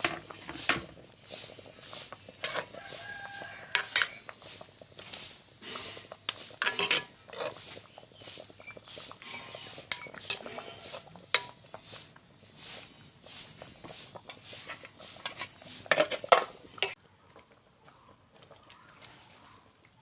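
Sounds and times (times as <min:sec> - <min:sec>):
metal utensils scraping a pot: 0:02.3 - 0:04.4, 0:05.7 - 0:11.8, 0:14.2 - 0:17.0.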